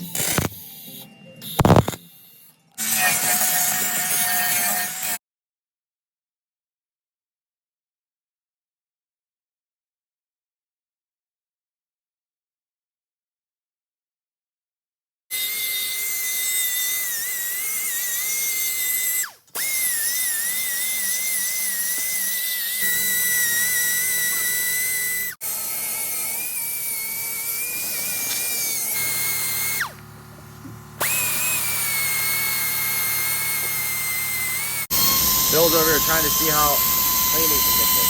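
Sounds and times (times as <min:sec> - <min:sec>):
power drill whining: 0:00.0 - 0:05.2, 0:15.3 - 0:38.0.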